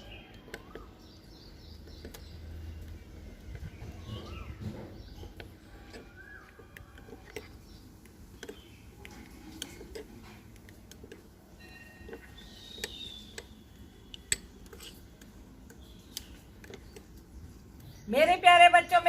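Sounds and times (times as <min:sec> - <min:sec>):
spoon clicking on small bowl: 0:08.4 - 0:17.1
faint bird chirps: 0:11.6 - 0:14.3.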